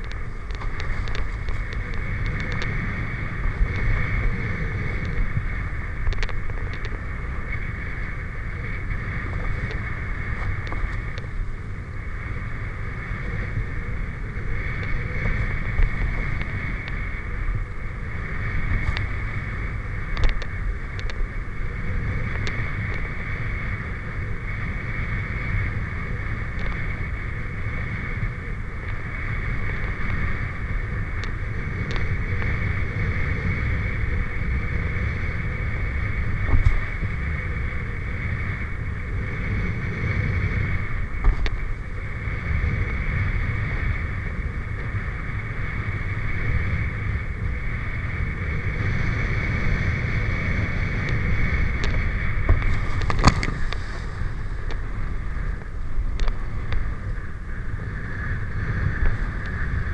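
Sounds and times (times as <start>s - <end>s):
faint clicks: 0.0s - 12.0s, 14.3s - 23.1s, 50.6s - 59.9s
wind on microphone: 0.0s - 59.9s
low rumble: 51.2s - 57.5s.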